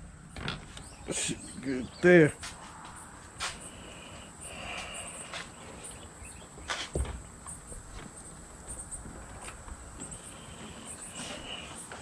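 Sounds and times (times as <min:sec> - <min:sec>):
dull thump: 0:06.9 - 0:07.2.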